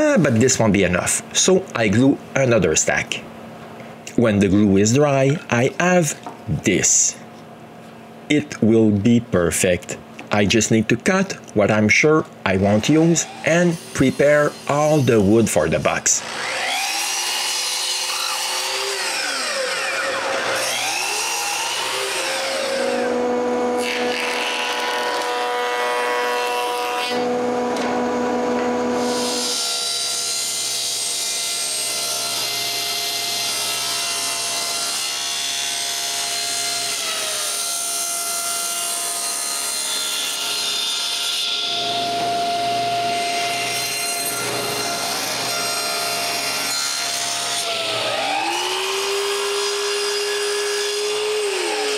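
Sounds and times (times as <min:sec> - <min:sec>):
power tools cutting wood: 0:12.6 - 0:51.9.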